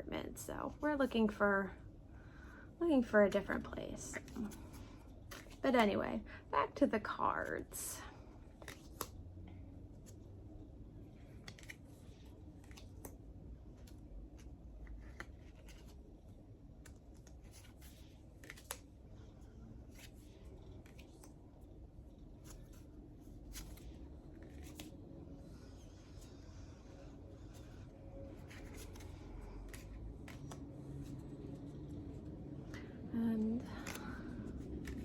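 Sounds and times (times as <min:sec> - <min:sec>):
cards clicking and brushing: 0:11.2 - 0:16.0, 0:16.7 - 0:18.9, 0:27.4 - 0:32.1, 0:33.4 - 0:35.0.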